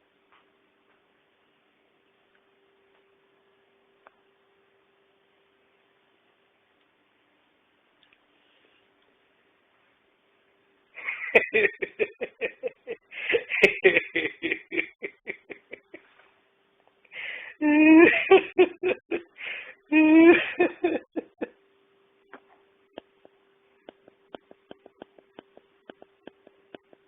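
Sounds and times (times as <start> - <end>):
person laughing: 11.0 - 16.1, 17.6 - 21.5, 22.9 - 27.0.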